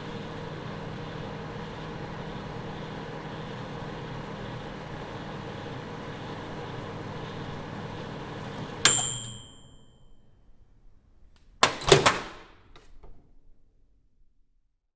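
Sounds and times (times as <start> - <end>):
microwave oven humming: 0.0 - 12.5
microwave bell ding: 8.6 - 10.3
microwave door clacks opening: 11.6 - 12.4.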